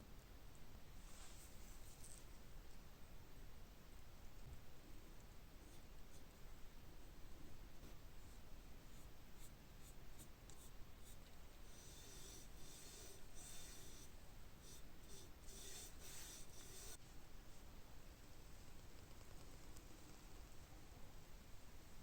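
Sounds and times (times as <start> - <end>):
faint scratchy rubbing: 1.0 - 2.4, 7.5 - 17.0.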